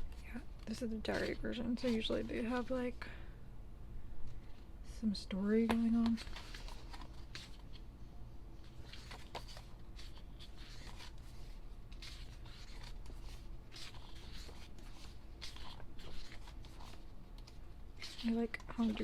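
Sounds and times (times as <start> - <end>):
pages rustling: 0.0 - 3.0, 5.6 - 7.9, 8.6 - 19.0
low steady hum: 0.0 - 19.0.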